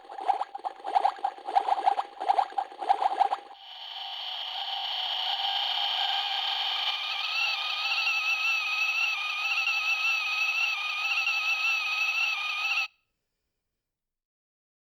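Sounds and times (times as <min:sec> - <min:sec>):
toy kettle whistling: 0:00.3 - 0:12.9.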